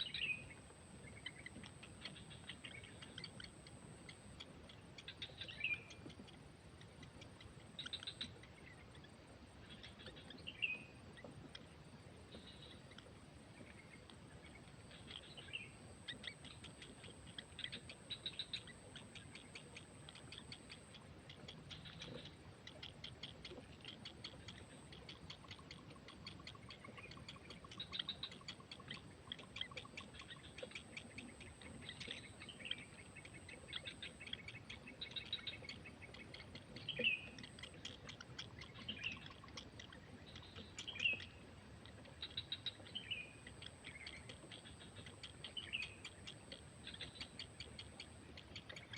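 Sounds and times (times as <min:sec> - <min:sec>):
birds chirping: 0:00.0 - 0:48.9
low background hiss: 0:00.0 - 0:48.9.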